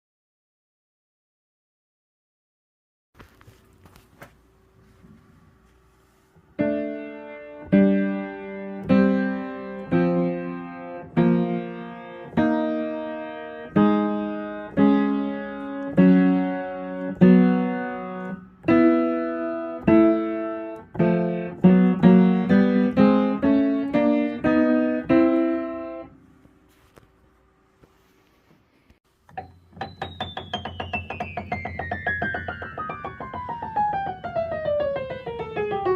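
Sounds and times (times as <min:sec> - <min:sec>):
piano chords: 0:06.6 - 0:26.4, 0:29.3 - 0:35.9.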